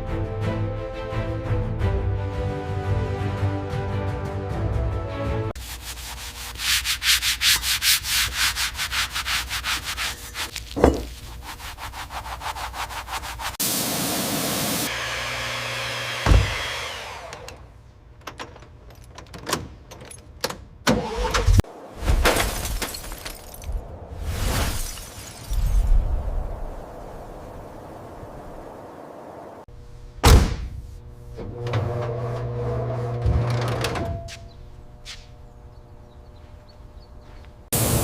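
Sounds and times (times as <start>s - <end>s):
sanding strokes: 5.6s - 13.6s.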